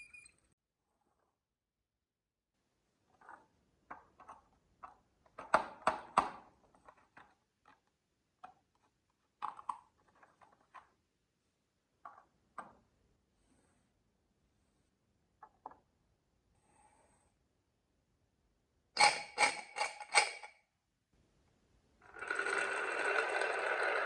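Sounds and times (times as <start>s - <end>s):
marbles clattering down track: 22.1s - 24.0s.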